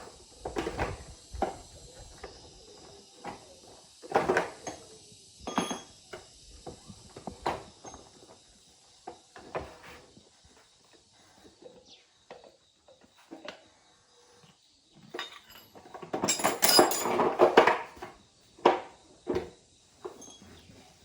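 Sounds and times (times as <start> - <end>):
metal tools knocking and clinking: 5.4 - 6.0, 15.1 - 17.8.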